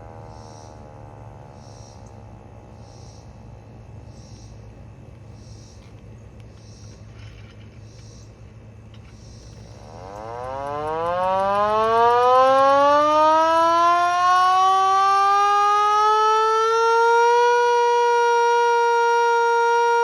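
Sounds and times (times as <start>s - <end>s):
hand-crank siren winding up: 9.8s - 20.0s.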